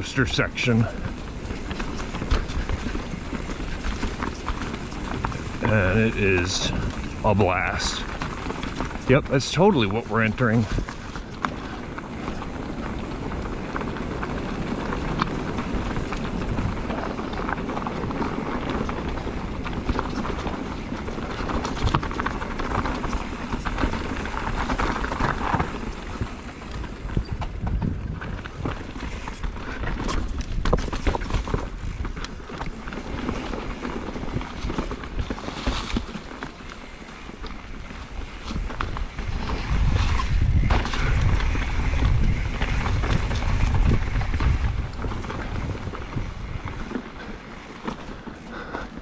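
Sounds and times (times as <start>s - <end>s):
bike chain and frame rattling: 0.0s - 49.0s
bike tyres crunching over rocks: 0.0s - 49.0s.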